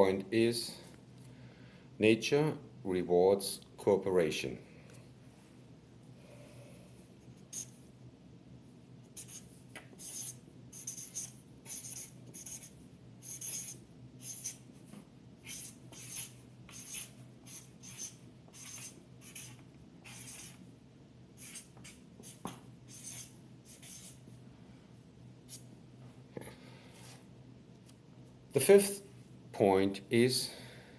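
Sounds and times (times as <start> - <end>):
faint low hum: 0.0 - 30.9
pen scratching on paper: 9.2 - 14.7, 15.4 - 20.6, 21.4 - 24.2.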